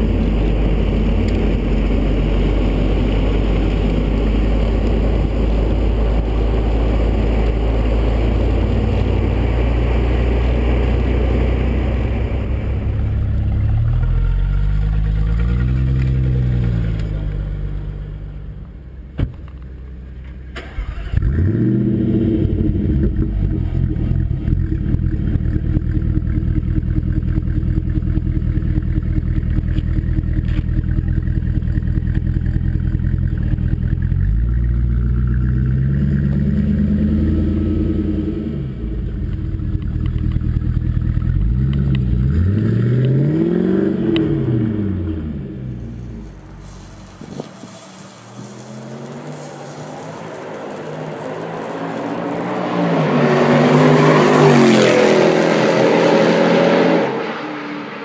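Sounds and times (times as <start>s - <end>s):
sports car engine revving: 20.8s - 58.0s.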